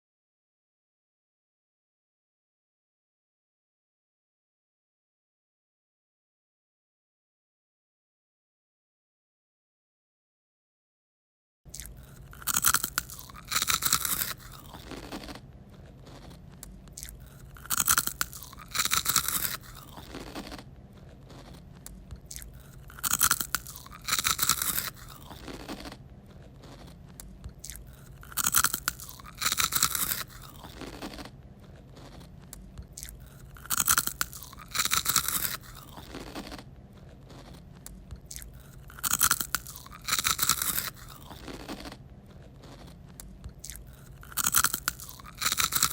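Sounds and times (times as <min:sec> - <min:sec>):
loud crunchy chewing: 0:11.7 - 0:45.9.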